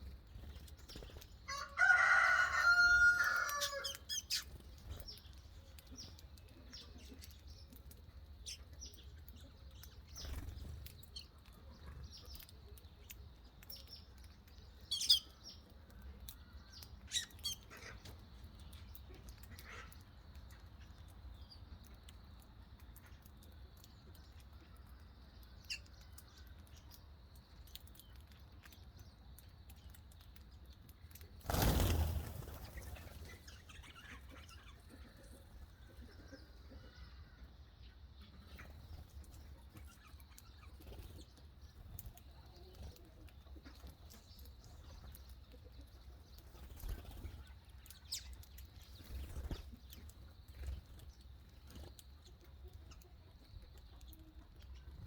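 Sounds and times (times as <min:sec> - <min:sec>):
small birds chirping: 0:00.0 - 0:55.0
wing flapping: 0:31.4 - 0:33.2.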